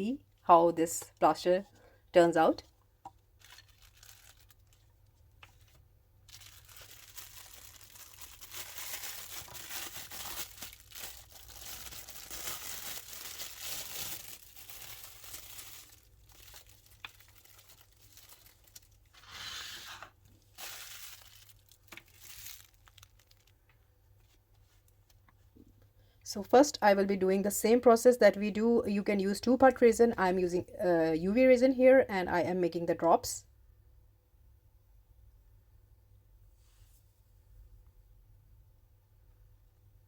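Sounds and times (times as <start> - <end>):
packaging crinkling and tearing: 3.1 - 23.6.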